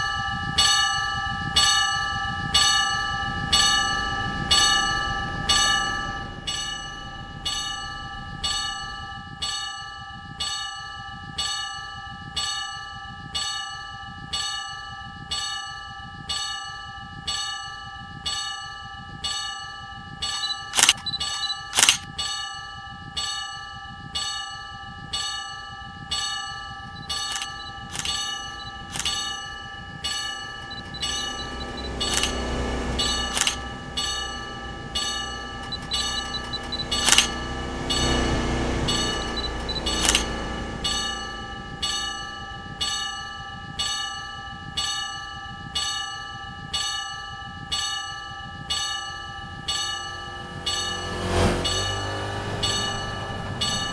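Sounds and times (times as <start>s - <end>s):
level crossing bell ringing: 0.0s - 53.9s
low rumble: 1.0s - 9.5s, 27.4s - 44.1s
sharp clicks: 20.7s - 22.0s, 27.2s - 29.4s, 30.6s - 34.3s, 35.0s - 42.0s.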